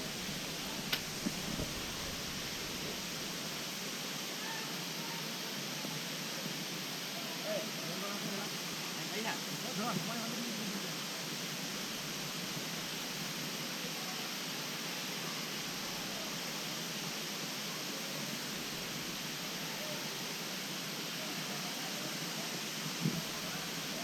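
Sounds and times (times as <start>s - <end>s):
waterfall rushing: 0.0s - 7.2s.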